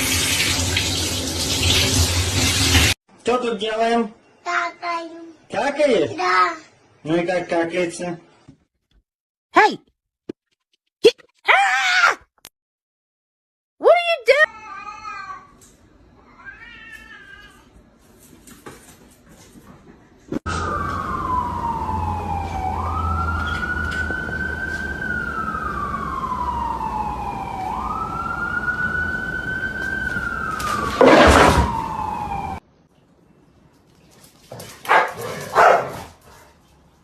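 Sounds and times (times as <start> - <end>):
siren wailing: 20.5 - 32.6.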